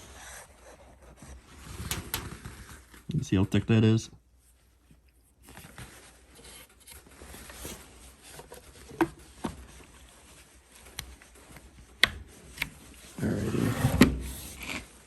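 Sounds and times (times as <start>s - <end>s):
handling rustle: 4.3s - 13.5s.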